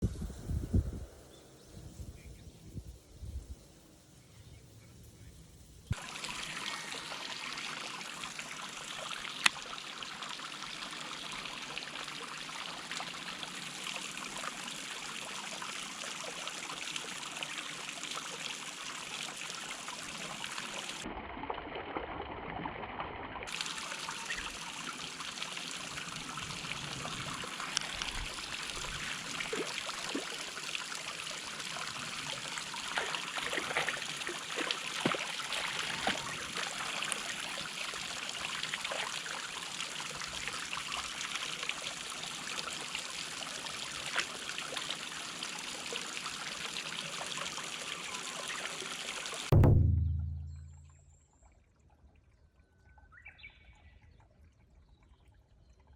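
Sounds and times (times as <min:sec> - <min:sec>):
water trickling: 0:05.9 - 0:21.1, 0:23.5 - 0:55.9
soft knocks: 0:49.5 - 0:50.9.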